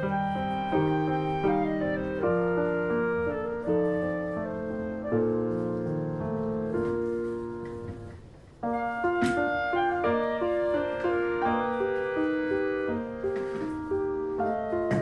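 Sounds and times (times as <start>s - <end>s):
slow piano melody: 0.0s - 15.0s.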